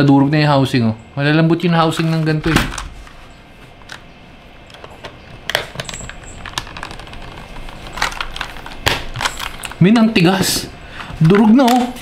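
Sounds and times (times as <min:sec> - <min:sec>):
plastic clicks and scrapes: 0:04.7 - 0:09.8.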